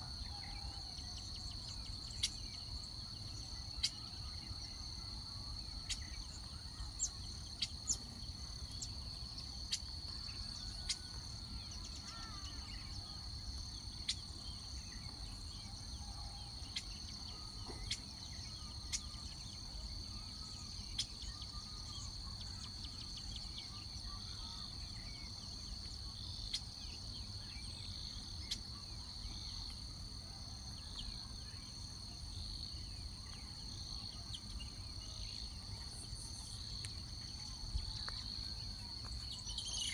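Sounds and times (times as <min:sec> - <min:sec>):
high-pitched insect chorus: 0:00.0 - 0:39.9.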